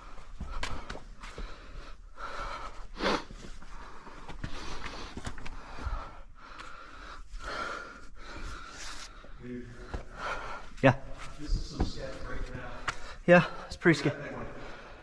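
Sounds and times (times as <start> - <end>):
person breathing hard: 0.0 - 10.9, 14.4 - 15.0.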